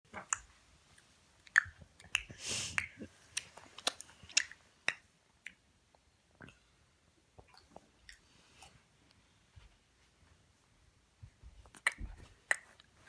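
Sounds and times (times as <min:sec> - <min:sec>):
baby mouth clicking: 0:01.4 - 0:05.6, 0:11.8 - 0:12.8
breathy puff: 0:02.3 - 0:02.9.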